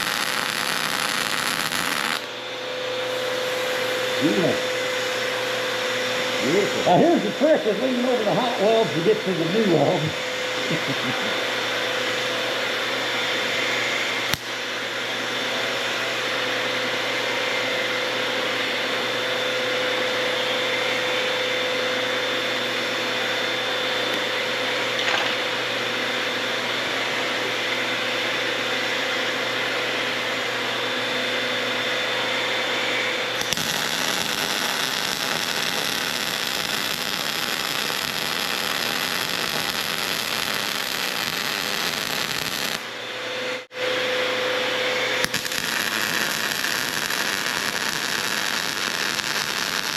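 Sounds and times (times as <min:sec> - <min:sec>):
welding arc hissing buzz: 0:00.0 - 0:02.4, 0:03.0 - 0:11.2, 0:14.1 - 0:14.6, 0:33.2 - 0:42.9, 0:45.1 - 0:49.9.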